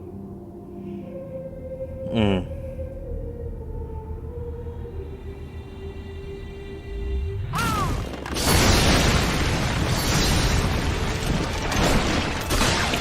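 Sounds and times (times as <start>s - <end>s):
crashing effects: 7.5s - 13.0s.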